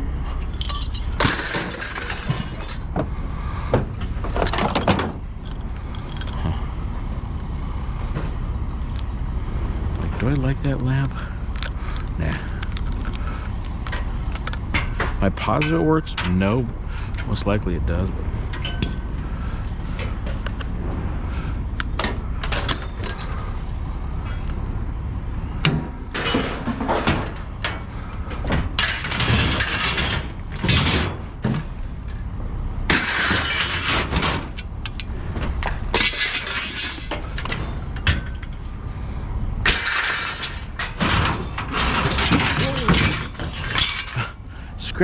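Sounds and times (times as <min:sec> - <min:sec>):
low vehicle rumble: 0:00.0 - 0:45.0
glass breaking: 0:00.5 - 0:02.9
scrap metal crashing: 0:00.5 - 0:06.6, 0:09.7 - 0:17.1, 0:25.6 - 0:39.0, 0:39.6 - 0:44.5.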